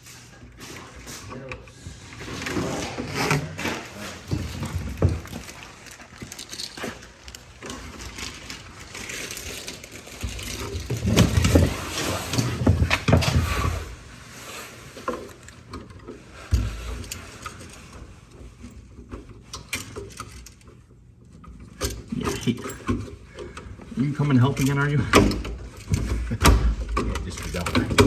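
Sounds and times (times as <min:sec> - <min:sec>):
handling noise with small parts: 0:04.3 - 0:13.4.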